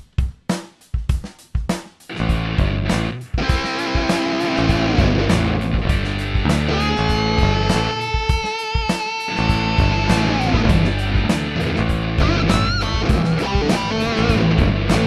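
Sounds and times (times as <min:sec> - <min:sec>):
steady drum beat: 0:00.0 - 0:15.0
bass: 0:02.1 - 0:03.6, 0:04.5 - 0:08.2, 0:09.3 - 0:15.0
electric guitar lead notes: 0:02.1 - 0:15.0.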